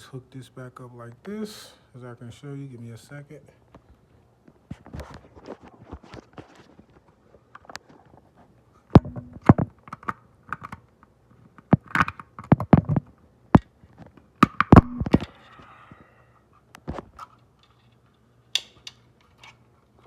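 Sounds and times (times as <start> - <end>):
plastic clicks and knocks: 9.0 - 10.8, 11.5 - 15.4.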